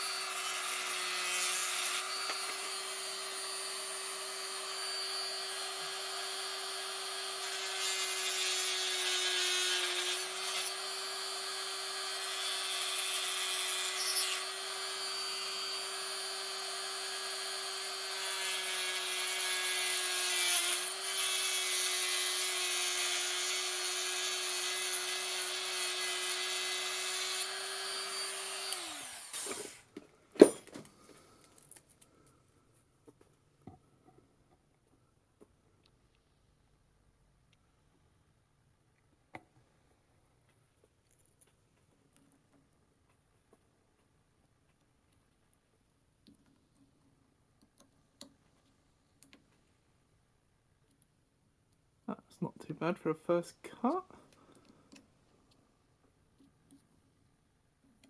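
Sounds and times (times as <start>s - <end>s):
rotary power tool grinding: 0.0s - 29.8s.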